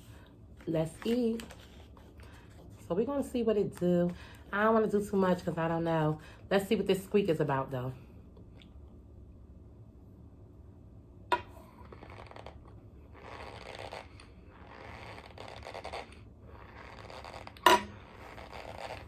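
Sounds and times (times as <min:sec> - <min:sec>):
corn starch squeaking and crunching: 0:11.7 - 0:19.0.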